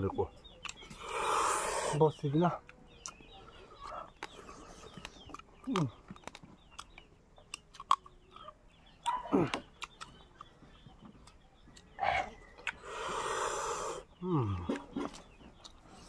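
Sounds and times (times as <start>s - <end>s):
clicks and taps of eating: 2.6s - 12.0s
short vocal sounds: 12.0s - 15.0s.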